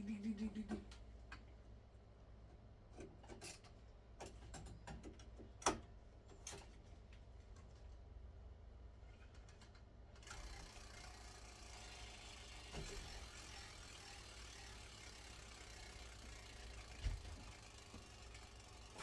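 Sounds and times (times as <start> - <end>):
low hum with light hiss: 0.0 - 10.2.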